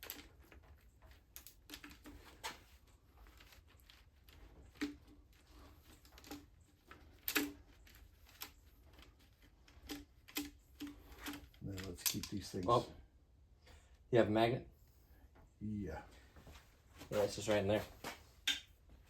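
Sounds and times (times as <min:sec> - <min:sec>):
metallic clicks of hand tools: 0:09.8 - 0:12.7.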